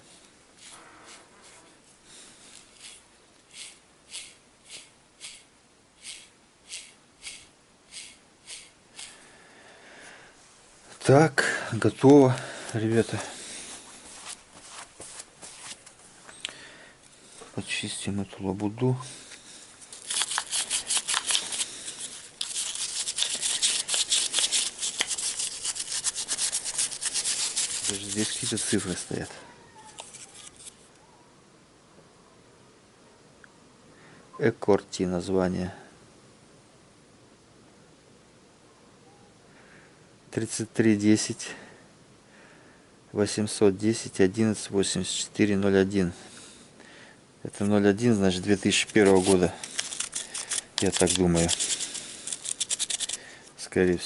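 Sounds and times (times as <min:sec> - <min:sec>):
short scraping strokes: 0:02.6 - 0:09.2, 0:19.8 - 0:29.3, 0:48.6 - 0:53.3.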